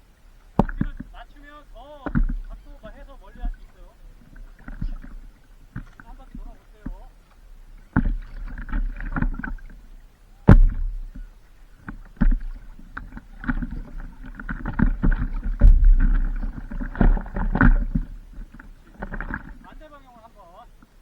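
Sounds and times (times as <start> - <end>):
paddle splashing through water: 0.0 - 21.0
sharp paddle knocks: 0.5 - 7.1, 10.4 - 19.8.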